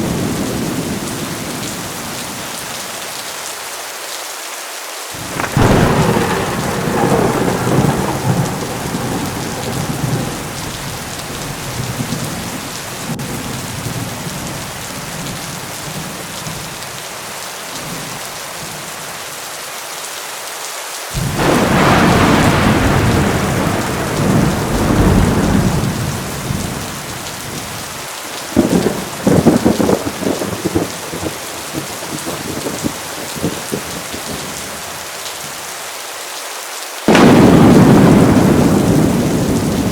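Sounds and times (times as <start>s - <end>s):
thunder rumbling: 0.0s - 2.8s, 5.2s - 16.9s, 21.2s - 34.9s, 37.1s - 39.9s
heavy rain falling: 0.0s - 39.9s
sharp thunder claps: 5.2s - 14.6s, 21.2s - 34.5s, 37.1s - 39.9s.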